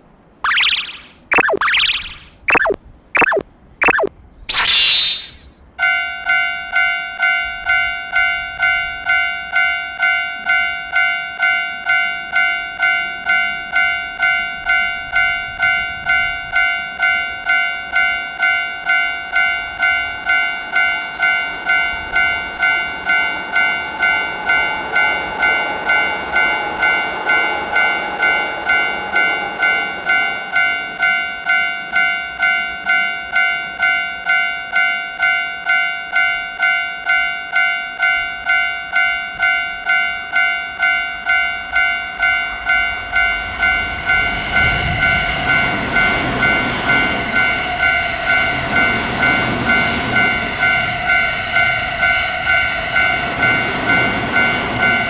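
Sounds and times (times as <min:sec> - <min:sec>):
railroad crossing warning bell: 0:05.8 - 0:55.0
train passing: 0:41.6 - 0:55.0.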